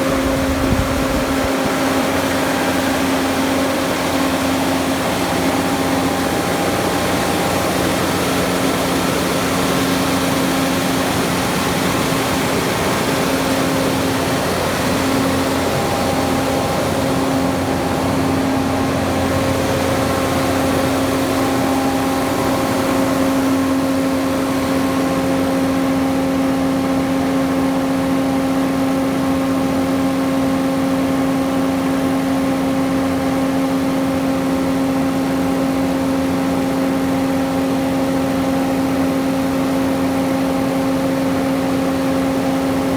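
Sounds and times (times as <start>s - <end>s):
diesel generator engine running: 0.0s - 42.9s.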